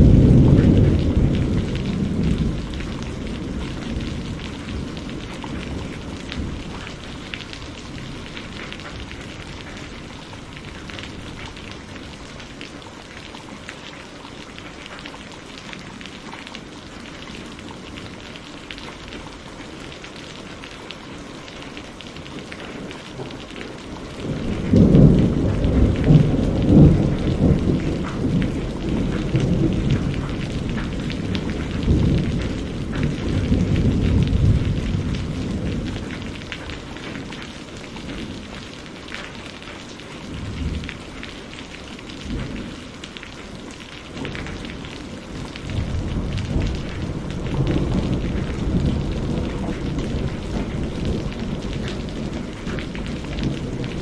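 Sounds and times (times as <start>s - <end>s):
thunder rumbling: 0.0s - 12.6s, 22.8s - 39.2s, 40.2s - 54.0s
steady rain: 0.0s - 54.0s.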